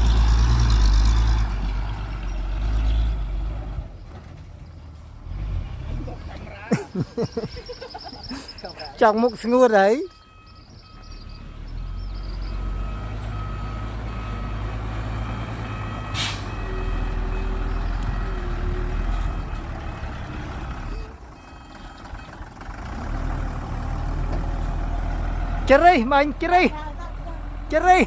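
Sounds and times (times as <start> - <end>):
diesel engine running: 0.0 - 28.0
reversing alarm beeping: 7.2 - 22.5.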